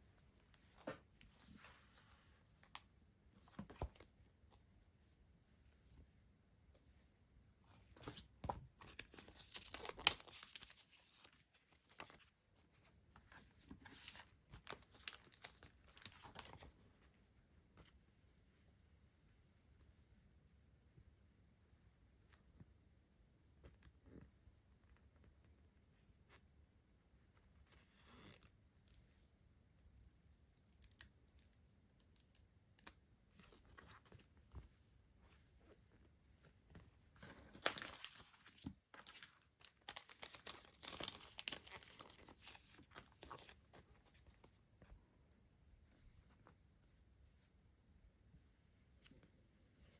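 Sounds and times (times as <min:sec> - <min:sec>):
light rustling of packaging: 0:00.0 - 0:06.1, 0:06.7 - 0:18.0, 0:27.4 - 0:45.2
packaging crinkling and tearing: 0:08.8 - 0:11.3, 0:14.0 - 0:16.6, 0:37.4 - 0:43.9.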